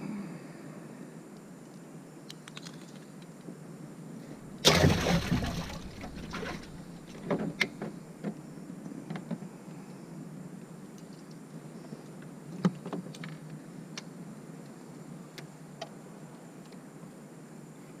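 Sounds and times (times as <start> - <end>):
fish splashing in water: 4.5 - 7.6
knocks and clicks against boat: 4.7 - 8.4.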